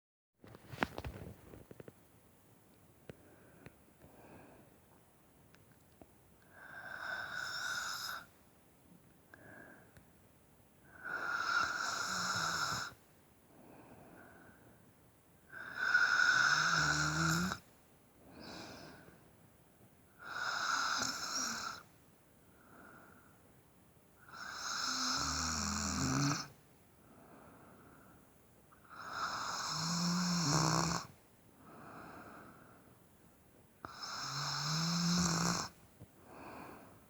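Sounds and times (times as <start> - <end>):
soft breaths: 3.0 - 5.1, 6.0 - 8.4, 9.2 - 10.2, 10.8 - 24.6, 26.5 - 29.1, 31.1 - 34.0, 35.7 - 37.0
person snoring: 6.5 - 8.3, 10.9 - 13.0, 15.5 - 17.6, 20.2 - 21.8, 24.3 - 26.5, 28.8 - 31.1, 33.9 - 35.7.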